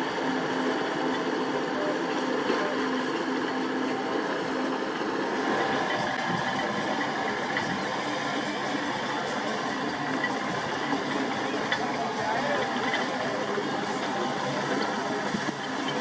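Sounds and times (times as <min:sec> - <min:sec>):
diesel machinery running: 0:00.0 - 0:16.0.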